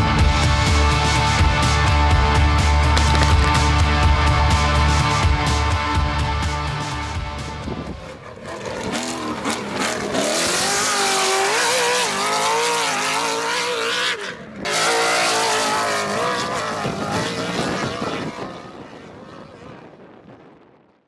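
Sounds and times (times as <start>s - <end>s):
engine revving hard: 0.0s - 18.8s.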